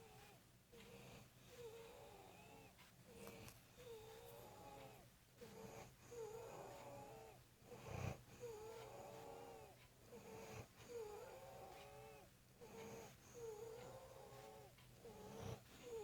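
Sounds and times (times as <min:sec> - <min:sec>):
man snoring with wailing breaths: 0:00.8 - 0:02.7, 0:03.8 - 0:16.0
short snort: 0:05.4 - 0:16.0.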